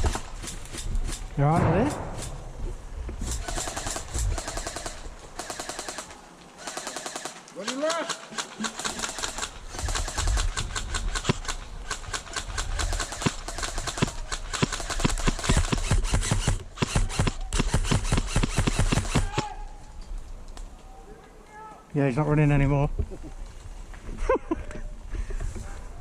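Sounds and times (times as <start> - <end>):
airsoft guns firing bursts: 3.3 - 19.5.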